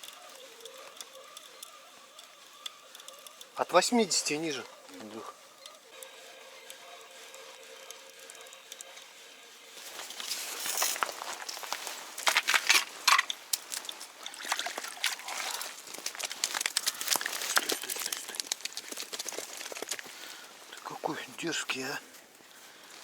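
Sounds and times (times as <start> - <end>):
water sloshing and trickling: 9.7 - 18.5
fish flapping and slapping: 10.0 - 20.7.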